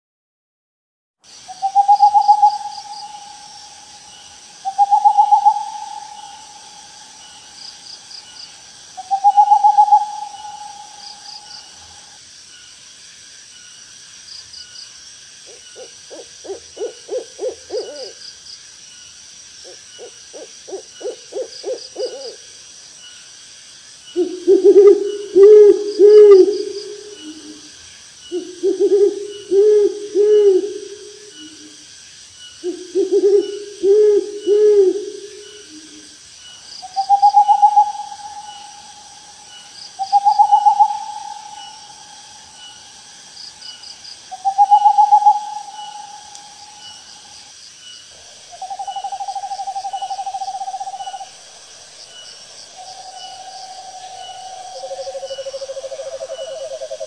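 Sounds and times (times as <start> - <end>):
insect chirring: 1.2 - 57.0
pulsed insect chirps: 1.3 - 57.0
owl trills: 1.5 - 7.8, 9.0 - 12.0, 15.5 - 18.2, 19.6 - 22.4, 28.3 - 31.7, 36.8 - 42.8, 44.3 - 47.0, 48.6 - 51.3
owl hooting: 1.5 - 8.1, 9.0 - 12.2, 15.5 - 18.2, 19.6 - 22.4, 24.2 - 27.6, 28.3 - 31.8, 32.6 - 36.1, 36.8 - 42.9, 44.3 - 47.0, 48.2 - 51.4, 52.8 - 57.0.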